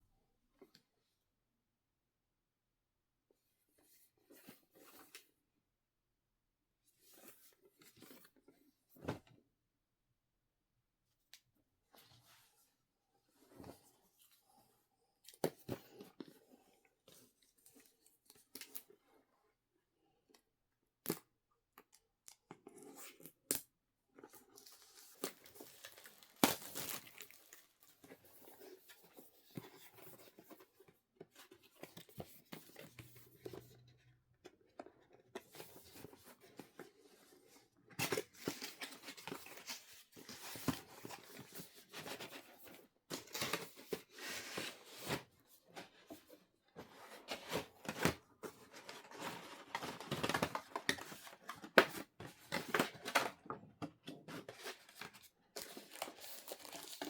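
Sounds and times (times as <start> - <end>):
packaging tearing and rustling: 25.0 - 27.7, 55.6 - 57.0.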